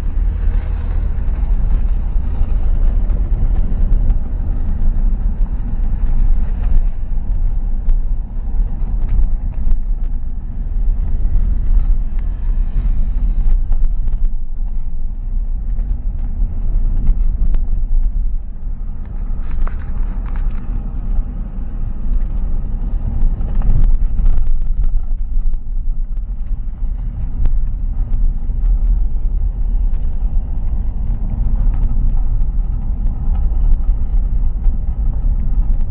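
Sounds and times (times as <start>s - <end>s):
car road rumble: 0.0s - 35.9s.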